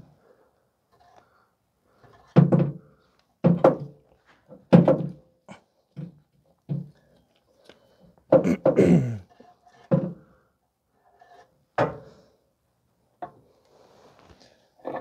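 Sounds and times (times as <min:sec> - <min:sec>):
metal clunks and knocks: 0:02.1 - 0:02.8, 0:04.5 - 0:05.2.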